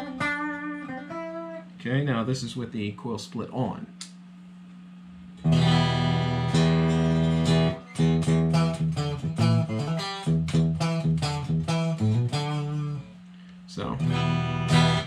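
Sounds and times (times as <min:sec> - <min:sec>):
clean electric guitar chords: 0:00.0 - 0:01.8, 0:05.4 - 0:13.2, 0:14.0 - 0:15.0.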